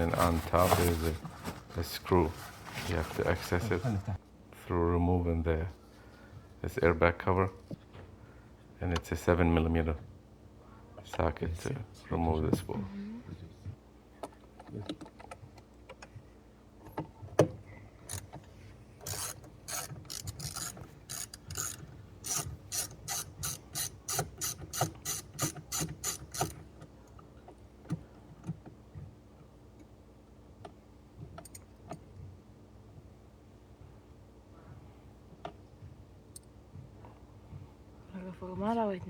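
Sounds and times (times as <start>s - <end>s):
ratchet wrench clicking: 19.0s - 26.6s.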